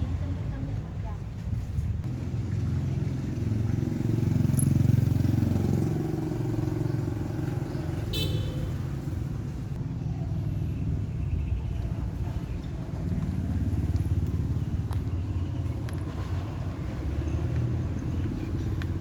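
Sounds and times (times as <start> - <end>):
vehicle engine running: 2.0 - 19.0.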